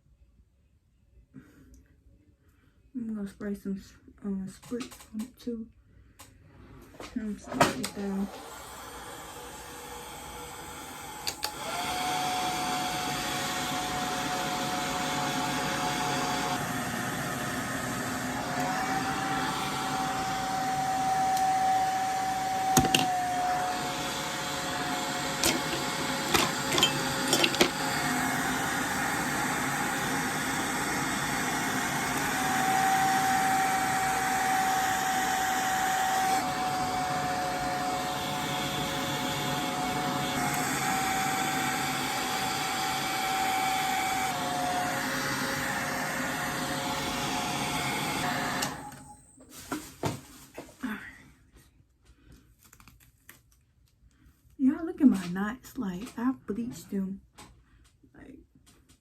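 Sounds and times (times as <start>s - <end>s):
hair dryer whining: 7.2s - 50.2s.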